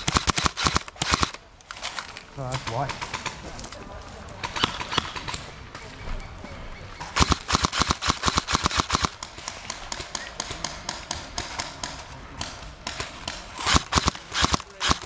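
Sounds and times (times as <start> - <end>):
airsoft guns firing: 0.0 - 2.0, 4.4 - 5.5, 7.0 - 15.0.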